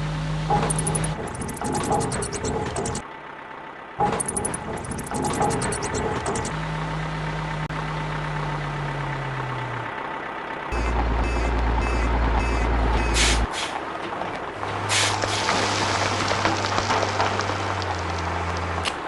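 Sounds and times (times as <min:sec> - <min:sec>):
cartoon engine hum: 0:00.0 - 0:03.0, 0:04.0 - 0:09.9
heavy truck engine: 0:00.0 - 0:19.0
reversing beeps: 0:00.5 - 0:03.0, 0:10.8 - 0:13.4
air brake hiss: 0:13.2 - 0:13.8, 0:14.9 - 0:15.5.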